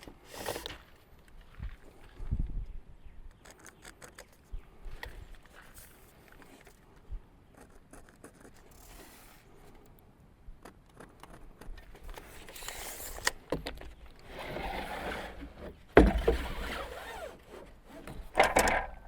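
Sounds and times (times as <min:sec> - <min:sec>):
wooden boards knocking and scraping: 0:13.5 - 0:19.0
rustle: 0:14.2 - 0:18.8.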